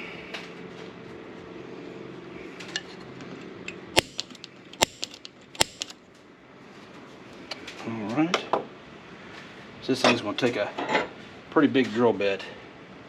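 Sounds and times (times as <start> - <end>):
metal tools clinking: 3.7 - 6.0
sharp metallic clacks: 4.0 - 6.0.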